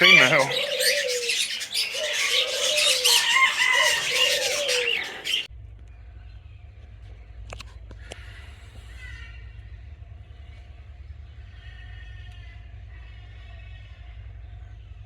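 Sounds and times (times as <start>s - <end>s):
low cooing call: 0.0s - 5.5s
parrots chirping and squawking: 0.0s - 5.5s
quiet low hum: 0.3s - 15.0s.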